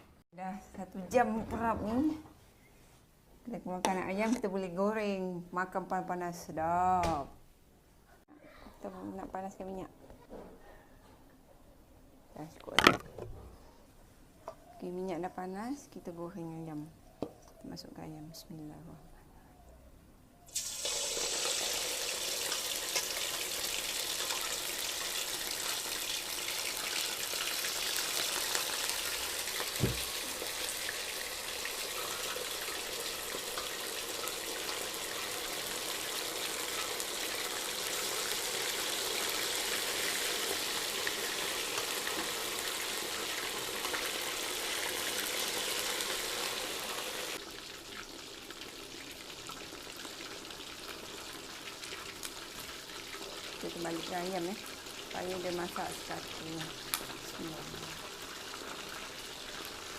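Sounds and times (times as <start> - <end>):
chicken sizzling in hot oil: 20.5 - 59.9.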